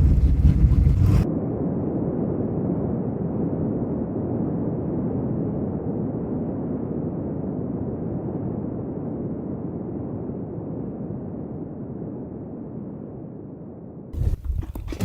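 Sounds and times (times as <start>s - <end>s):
muffled rumbling: 0.0s - 1.3s, 14.2s - 15.0s.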